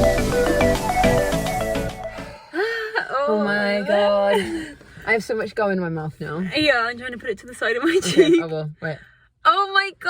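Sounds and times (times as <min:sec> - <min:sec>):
electronic music with synth melody: 0:00.0 - 0:02.3.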